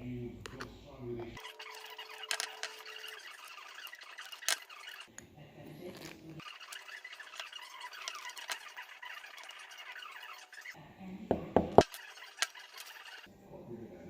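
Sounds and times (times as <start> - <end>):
metal parts squeaking and scraping: 1.2 - 10.8, 11.8 - 13.3.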